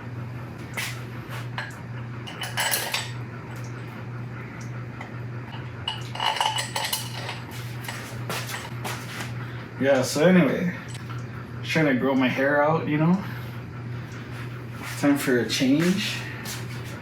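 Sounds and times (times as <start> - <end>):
steady low hum: 0.0 - 17.0
metal tools clinking: 2.3 - 3.1, 5.9 - 8.7.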